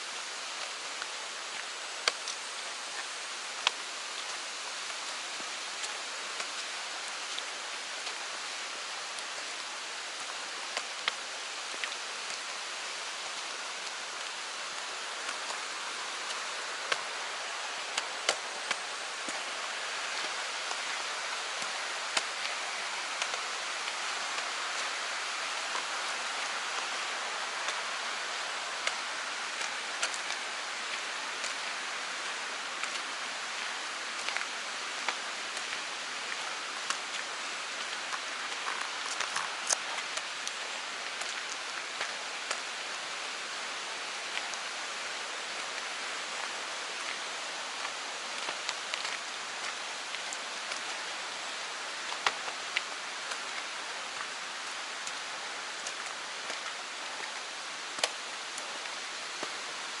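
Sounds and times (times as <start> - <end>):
stream water rushing: 0.0 - 60.0.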